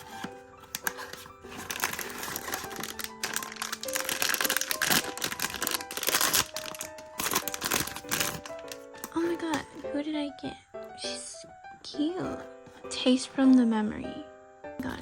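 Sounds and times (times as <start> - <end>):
packaging crinkling and rustling: 0.0 - 9.8
background music with held notes: 0.0 - 15.0.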